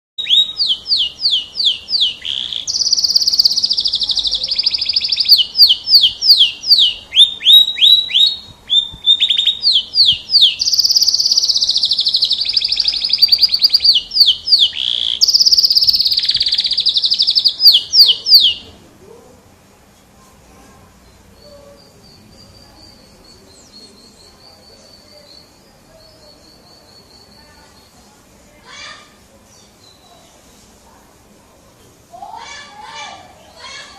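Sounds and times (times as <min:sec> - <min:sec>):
faint high chirping: 0:00.2 - 0:18.8, 0:20.7 - 0:31.0
canary singing: 0:00.2 - 0:18.9, 0:20.9 - 0:28.0.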